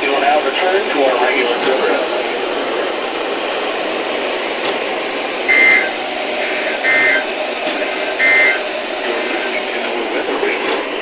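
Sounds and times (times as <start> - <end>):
radio static hiss: 5.4 - 11.0.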